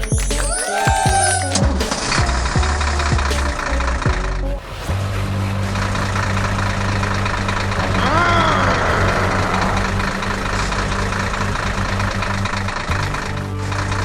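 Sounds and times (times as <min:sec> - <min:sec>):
cartoon truck engine idling: 0:05.0 - 0:14.0
short pitched cry: 0:07.8 - 0:10.0.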